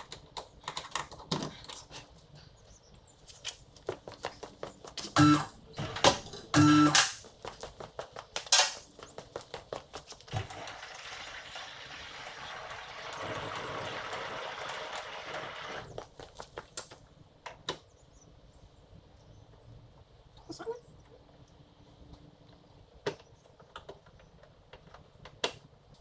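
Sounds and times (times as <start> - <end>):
metallic knocks and clinks of tools: 8.4 - 8.8.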